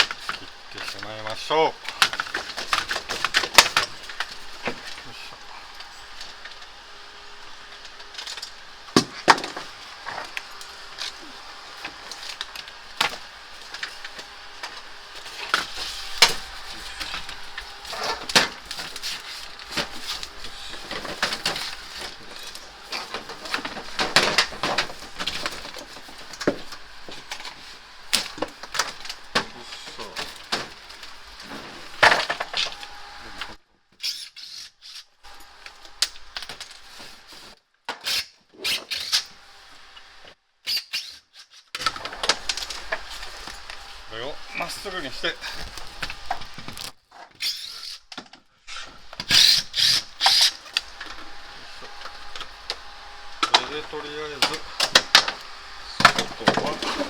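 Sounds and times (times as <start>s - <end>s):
rustling handling: 9.4s - 33.6s.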